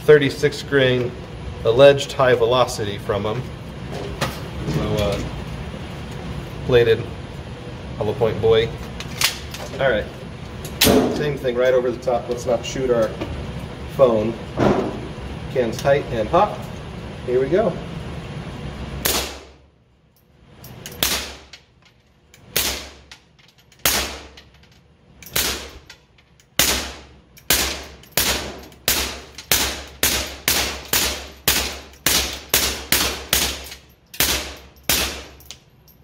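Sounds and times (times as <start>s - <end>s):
suppressed pistol shots: 19.0s - 19.6s.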